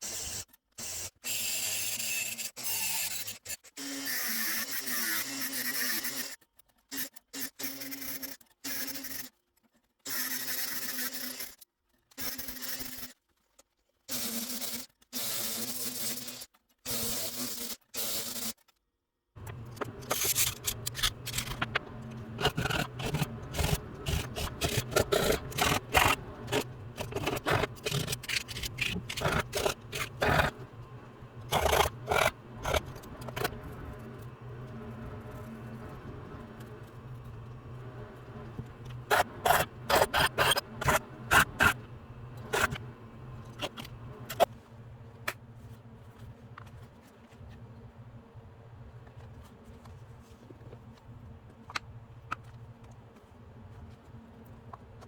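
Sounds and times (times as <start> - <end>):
file scraping small tool: 0.0 - 9.3, 19.4 - 44.5.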